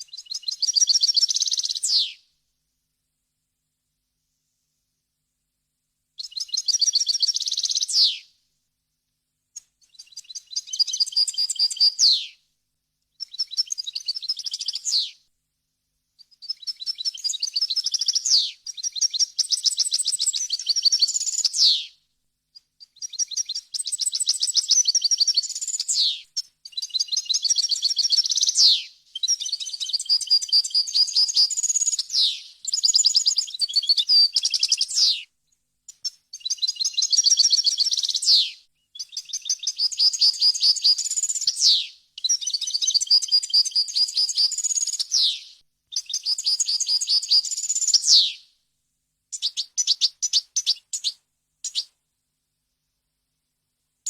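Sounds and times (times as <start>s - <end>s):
goldfinch twittering song: 0.1s - 2.1s, 6.2s - 8.2s, 9.8s - 12.3s, 13.2s - 15.1s, 16.3s - 21.9s, 22.8s - 35.2s, 36.0s - 48.4s.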